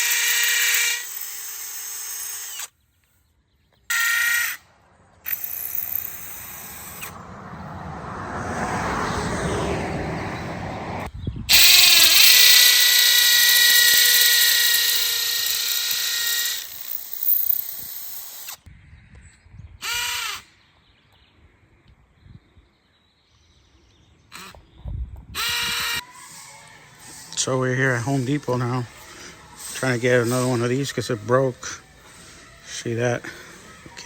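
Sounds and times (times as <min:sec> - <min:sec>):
power drill drilling with high whine: 0:00.0 - 0:02.7, 0:03.9 - 0:04.6, 0:05.3 - 0:07.2, 0:11.5 - 0:18.6, 0:25.4 - 0:34.0.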